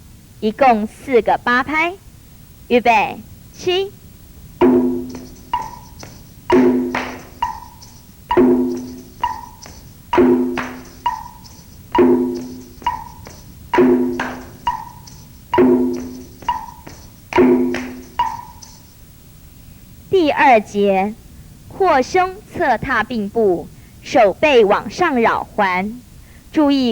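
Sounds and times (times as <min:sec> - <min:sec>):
drum beat: 0:04.6 - 0:18.8
wood block knocking: 0:04.6 - 0:18.9.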